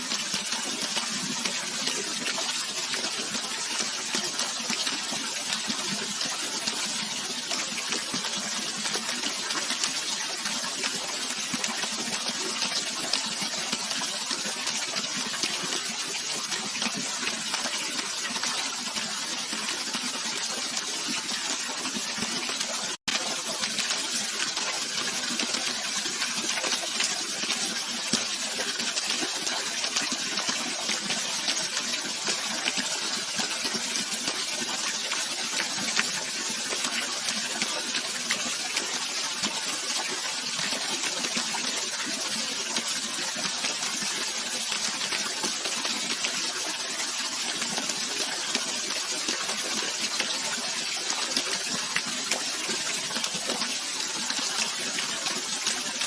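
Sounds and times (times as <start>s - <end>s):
running water splashing: 0.0s - 56.0s.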